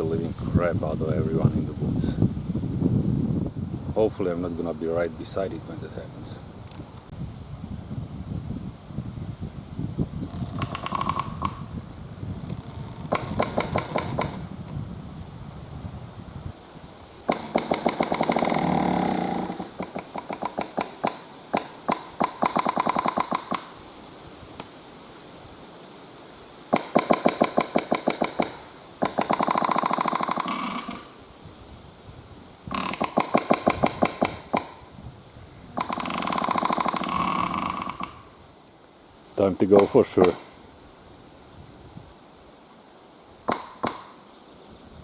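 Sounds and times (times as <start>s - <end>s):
low wind rumble: 0.0s - 20.6s, 28.3s - 42.7s
tree creaking in wind: 0.0s - 25.6s, 26.3s - 45.0s.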